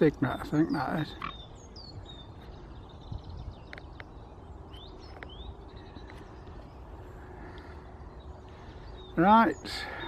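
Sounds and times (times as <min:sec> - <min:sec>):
bird chirps: 0:00.0 - 0:10.0
wind rumble on microphone: 0:01.1 - 0:08.5.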